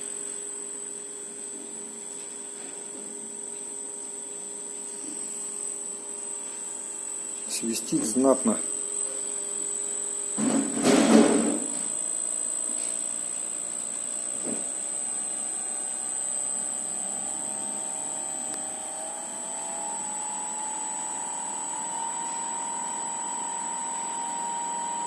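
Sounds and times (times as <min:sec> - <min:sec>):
electric motor whistle: 0:14.7 - 0:25.0
lower whine rising in pitch: 0:15.0 - 0:25.0.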